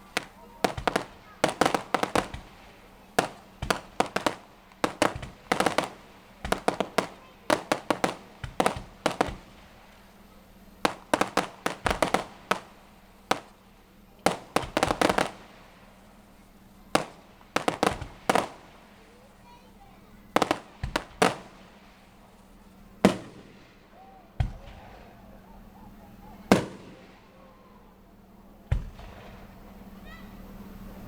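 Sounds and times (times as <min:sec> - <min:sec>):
fireworks bangs and crackles: 0:00.0 - 0:31.0.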